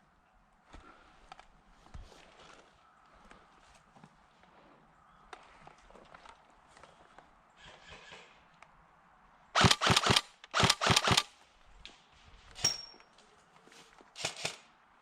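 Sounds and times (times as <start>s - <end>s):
airsoft guns firing: 9.6s - 11.3s.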